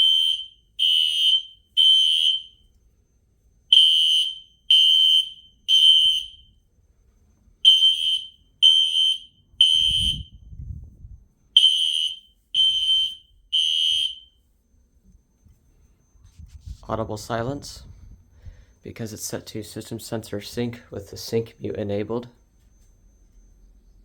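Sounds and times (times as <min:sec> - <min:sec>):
buzzing alarm horn blasts: 0:00.0 - 0:02.6, 0:03.7 - 0:06.6, 0:07.6 - 0:10.4, 0:11.5 - 0:14.4.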